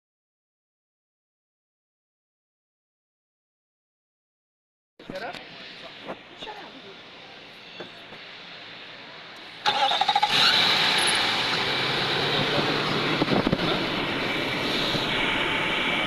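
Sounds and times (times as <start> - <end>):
car engine idling: 5.2 - 16.0
starter motor cranking: 9.6 - 11.7.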